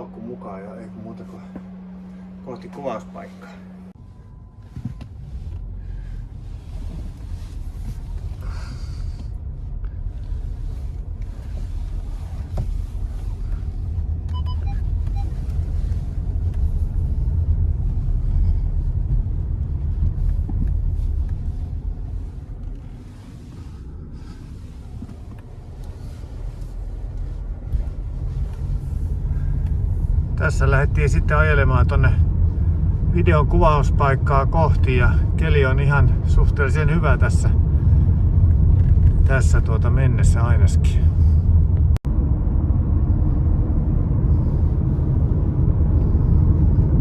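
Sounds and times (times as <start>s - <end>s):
car engine rumble: 0.0s - 47.0s
road noise: 0.0s - 47.0s.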